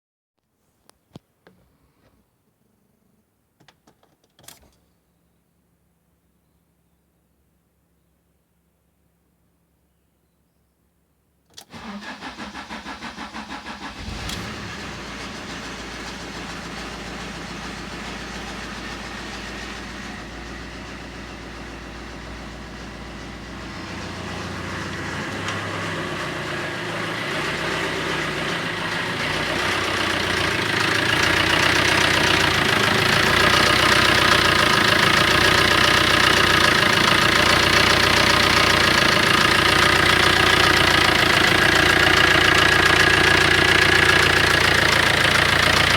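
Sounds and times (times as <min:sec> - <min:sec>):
diesel engine cranking: 0:11.6 - 0:45.9
diesel engine idling with knock: 0:13.8 - 0:45.9.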